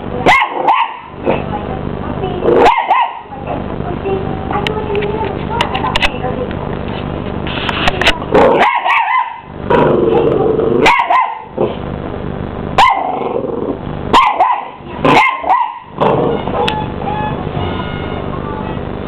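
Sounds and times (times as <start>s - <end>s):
puppy barking and yapping: 0.3s - 1.1s, 2.6s - 3.2s, 8.5s - 9.5s, 10.8s - 11.5s, 12.8s - 13.1s, 14.1s - 16.0s
puppy growling: 8.2s - 8.9s, 9.6s - 11.8s, 12.9s - 13.9s, 15.0s - 16.8s
vacuum cleaner humming: 15.9s - 19.0s.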